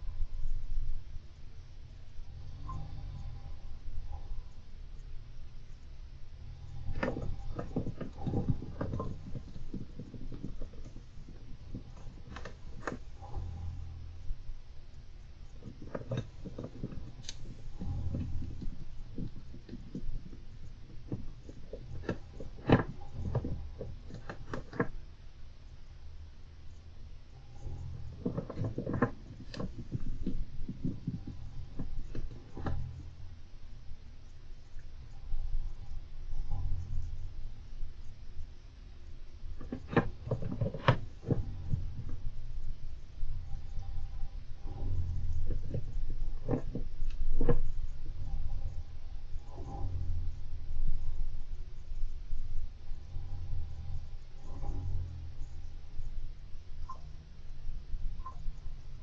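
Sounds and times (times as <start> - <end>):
low steady hum: 0.0 - 59.0
hamster scrabbling in cage: 6.6 - 14.2, 15.5 - 25.0, 27.6 - 33.2.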